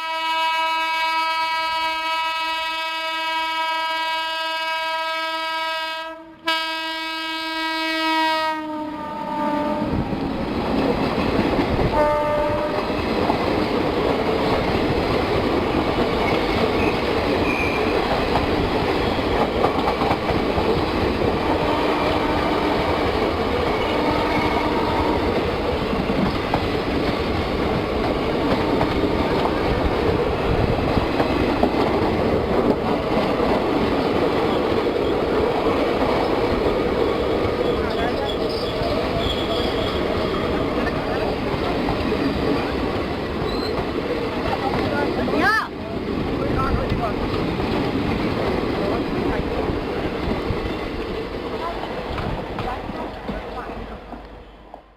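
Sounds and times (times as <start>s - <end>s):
train air horn blast: 0.0s - 10.0s, 11.9s - 13.0s, 21.4s - 23.0s, 23.8s - 25.4s
train rumbling past: 0.0s - 54.9s
train wheel clatter: 10.0s - 54.9s.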